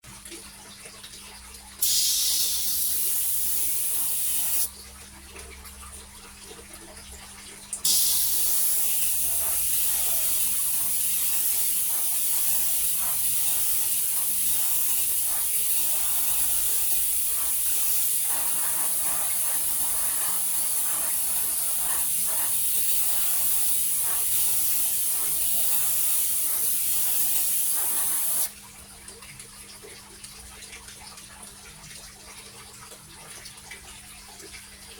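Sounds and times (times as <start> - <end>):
airbrush spraying hiss: 1.8 - 4.7, 7.8 - 28.5.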